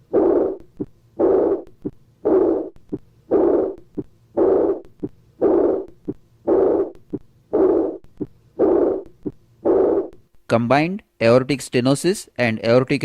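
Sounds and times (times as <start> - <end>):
high-pitched blowing heart murmur: 0.0 - 10.2.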